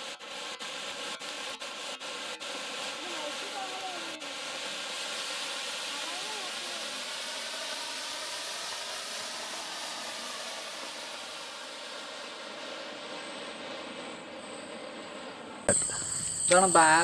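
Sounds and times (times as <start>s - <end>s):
firework fountain hissing: 0.0s - 13.6s.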